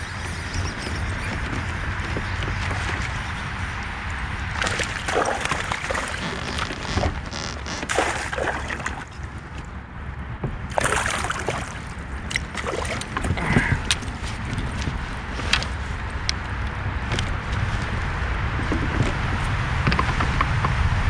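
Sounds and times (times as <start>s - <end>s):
water splashing against kayak: 1.2s - 9.8s, 10.7s - 16.6s
steady low rumble: 1.9s - 21.0s.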